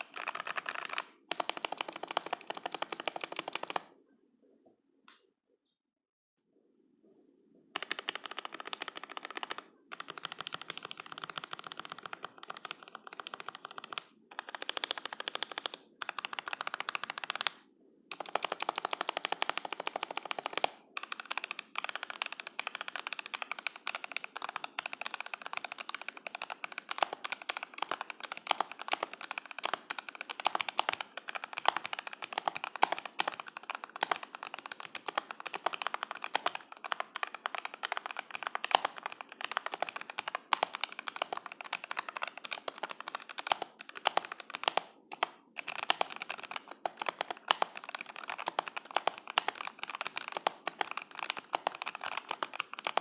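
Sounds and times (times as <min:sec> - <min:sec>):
fast mechanical keyboard typing: 0:00.0 - 0:03.9, 0:07.8 - 0:53.0.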